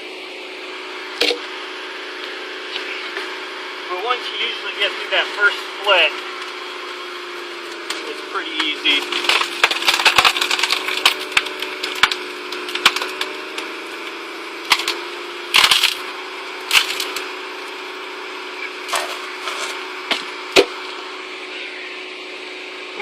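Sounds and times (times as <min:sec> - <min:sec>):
engine hum: 0:00.0 - 0:23.0
wood cracking and splintering: 0:07.7 - 0:17.3.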